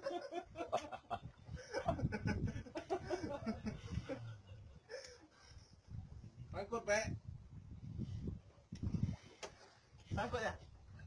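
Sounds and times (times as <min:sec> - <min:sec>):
people laughing: 0:00.0 - 0:05.2.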